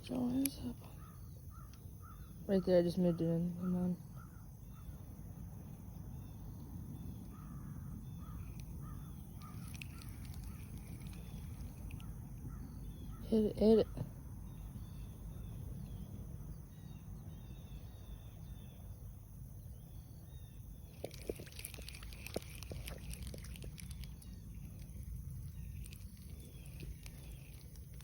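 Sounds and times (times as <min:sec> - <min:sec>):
low wind rumble: 0:00.0 - 0:28.0
small birds chirping: 0:00.0 - 0:28.0
faint clicks and rustles: 0:08.2 - 0:12.5, 0:20.9 - 0:28.0.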